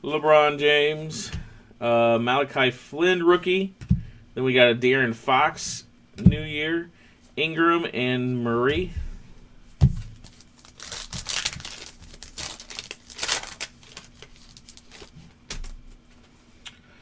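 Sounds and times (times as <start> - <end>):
card pack wrapper crinkling and tearing: 10.2 - 15.9.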